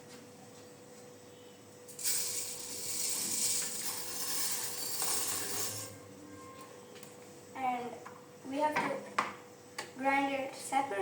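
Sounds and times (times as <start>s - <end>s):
sugar pouring hiss: 1.9s - 5.6s.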